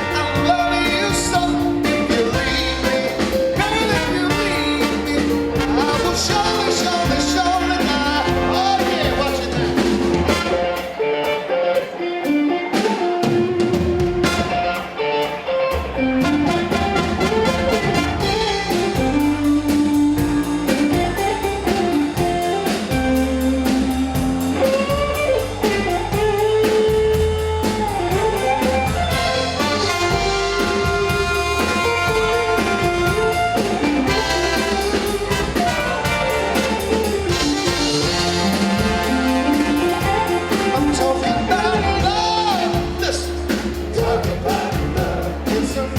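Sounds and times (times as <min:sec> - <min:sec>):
bass: 0:00.0 - 0:11.0, 0:12.2 - 0:14.9, 0:15.7 - 0:45.9
drum kit beat: 0:00.0 - 0:45.9
lead guitar solo: 0:08.5 - 0:43.0.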